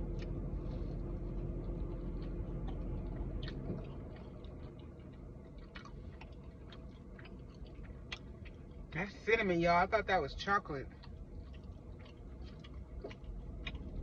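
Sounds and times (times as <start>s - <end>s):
close-up chewing: 0.0s - 14.0s
steady low hum: 0.0s - 14.0s
wet mouth clicks and smacks: 1.6s - 8.9s.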